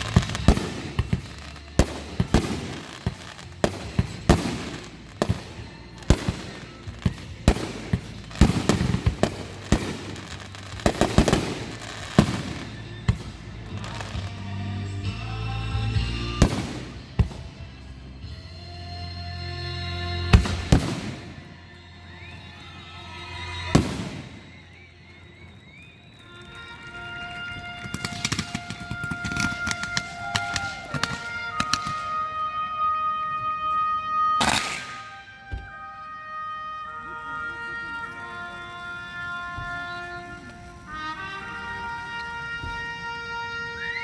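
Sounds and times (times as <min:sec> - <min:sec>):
firework shells bursting: 0:00.0 - 0:13.3, 0:23.8 - 0:32.5, 0:34.4 - 0:35.9
music: 0:00.0 - 0:44.0.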